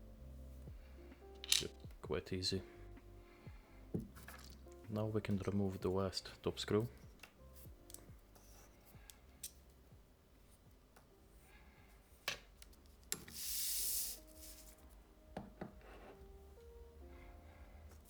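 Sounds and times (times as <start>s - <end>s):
hand tools clicking on metal: 1.4s - 1.8s.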